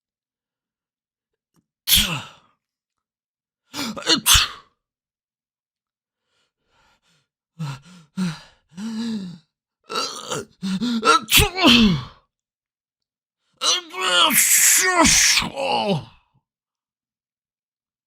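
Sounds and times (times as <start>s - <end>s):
person sneezing: 1.9s - 2.3s, 3.8s - 4.7s, 11.0s - 12.1s, 14.3s - 15.6s.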